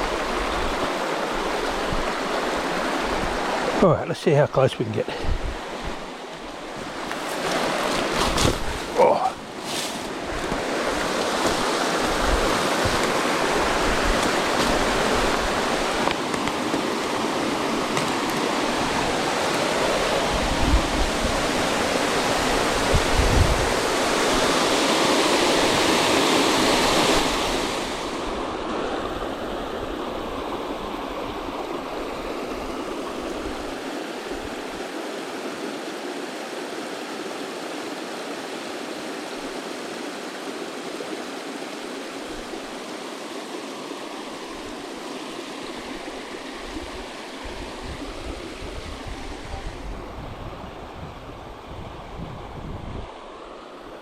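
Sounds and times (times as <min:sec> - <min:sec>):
waterfall roaring: 0:08.9 - 0:09.6.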